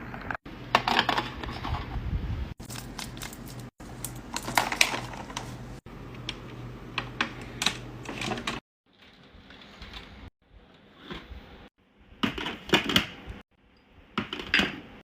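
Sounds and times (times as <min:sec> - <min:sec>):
snack packages clattering: 0:02.6 - 0:05.6.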